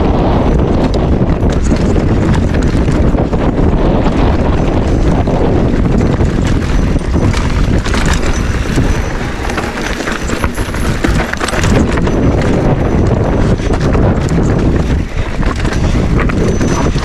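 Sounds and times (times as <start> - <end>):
mountain bike rattling over rocks: 0.0 - 17.0
wind buffeting microphone: 0.0 - 17.0.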